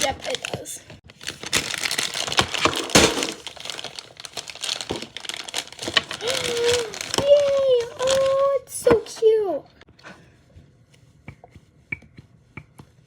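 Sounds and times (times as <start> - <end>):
plastic bag crinkling: 0.0 - 8.6.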